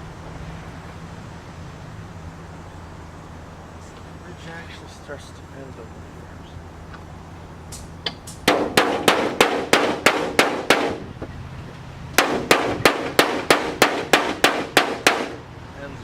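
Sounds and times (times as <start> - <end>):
hammer striking sheet metal: 8.3 - 11.0, 12.2 - 15.4.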